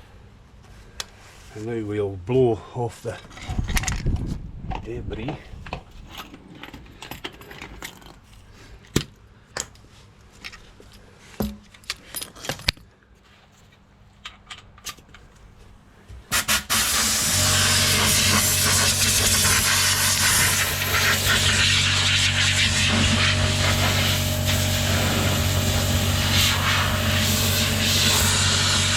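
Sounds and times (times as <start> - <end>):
air blow gun hissing: 16.3 - 28.9
low hum: 17.3 - 28.9.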